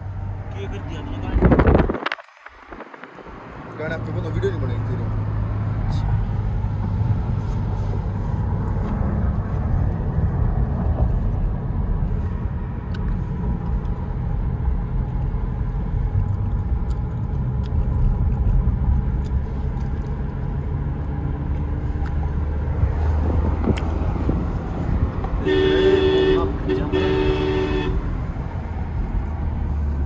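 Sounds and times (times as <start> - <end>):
car engine and road rumble: 0.0 - 30.0.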